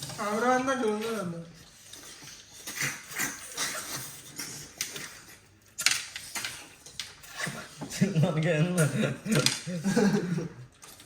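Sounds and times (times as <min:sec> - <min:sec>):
people slurping snails: 0:00.0 - 0:11.0.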